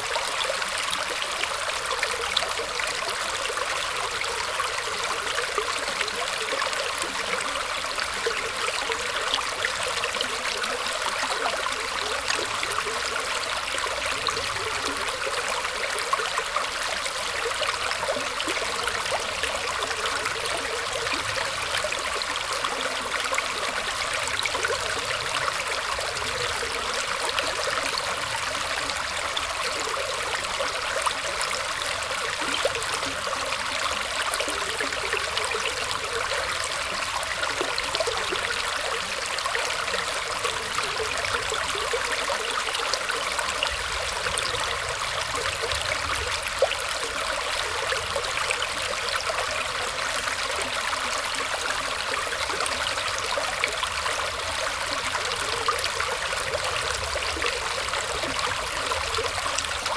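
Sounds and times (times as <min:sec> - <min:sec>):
stream trickling and splashing: 0:00.0 - 0:59.9.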